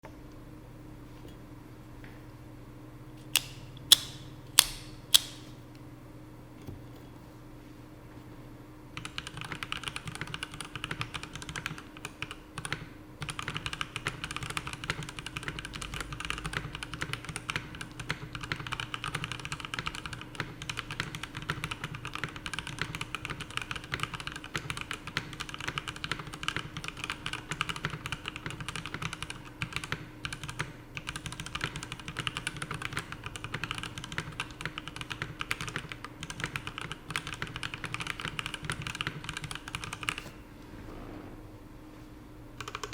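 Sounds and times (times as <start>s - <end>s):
mechanical keyboard typing: 9.0s - 40.3s, 42.6s - 42.9s.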